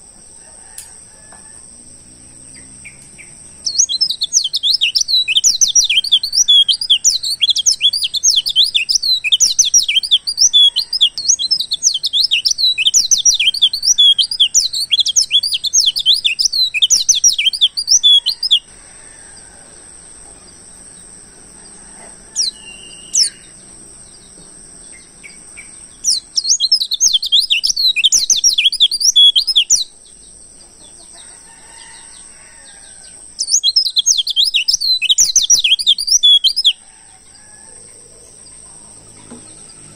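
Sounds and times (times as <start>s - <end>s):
bird twittering chirps: 1.8s - 18.8s, 19.4s - 39.9s
thin rising whistles: 22.3s - 23.6s.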